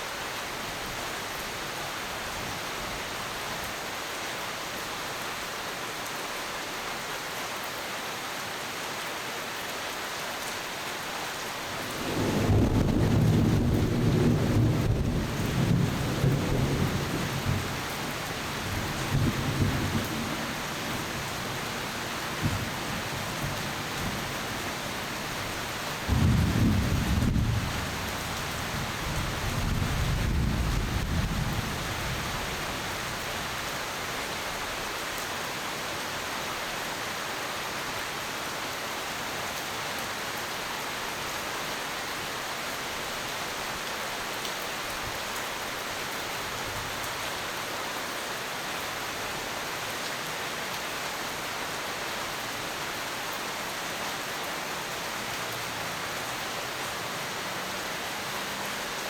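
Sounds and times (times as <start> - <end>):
steady rain: 0.0 - 59.0
low rolls of thunder: 11.8 - 21.0, 26.0 - 28.1, 29.1 - 32.4.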